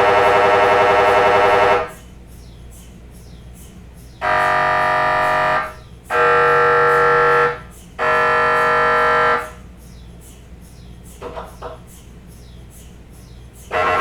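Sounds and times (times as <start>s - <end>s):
mri scanner buzzing: 0.0s - 2.0s, 4.2s - 9.7s, 13.7s - 14.0s
steady low hum: 0.0s - 14.0s.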